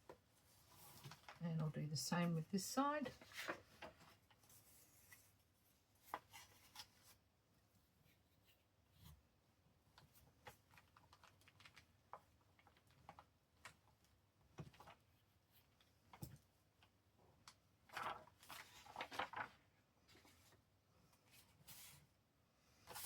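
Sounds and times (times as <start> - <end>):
paper rustling and tapping: 10.0 - 15.1, 16.1 - 20.6.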